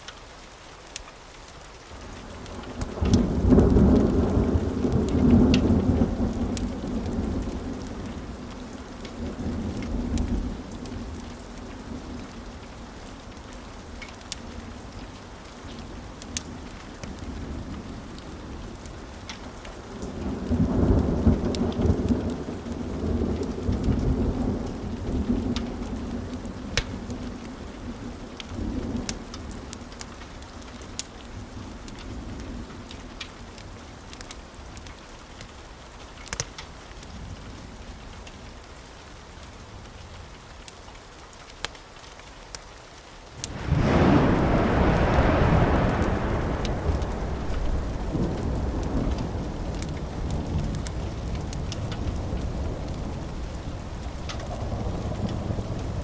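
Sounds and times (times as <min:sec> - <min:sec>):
steady rain: 0:00.0 - 0:56.0
thunder rumbling: 0:02.2 - 0:30.4, 0:43.4 - 0:56.0.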